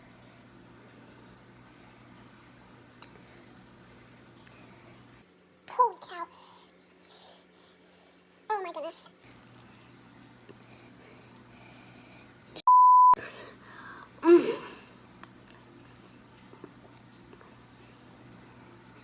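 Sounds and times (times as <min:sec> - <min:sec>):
censor bleep: 0:12.7 - 0:13.2.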